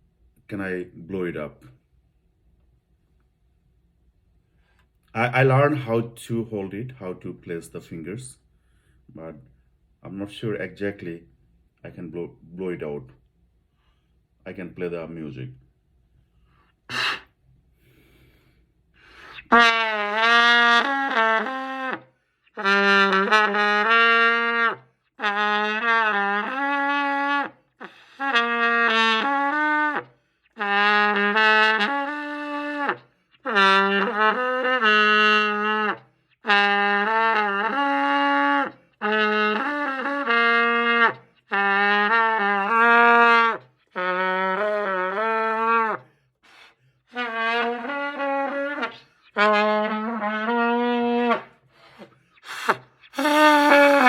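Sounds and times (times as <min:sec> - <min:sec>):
trumpet wavering notes: 0:19.4 - 0:22.0, 0:30.6 - 0:46.0, 0:47.1 - 0:51.5, 0:52.6 - 0:54.0.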